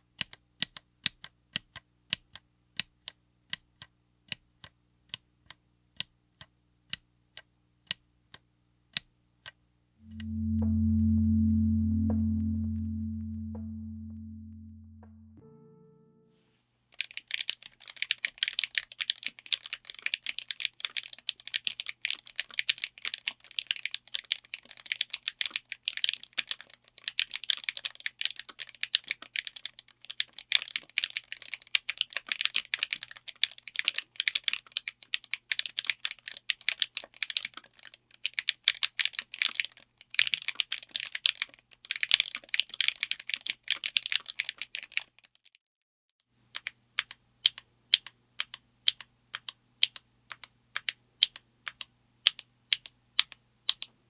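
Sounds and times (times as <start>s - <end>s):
mechanical keyboard typing: 46.6s - 53.9s.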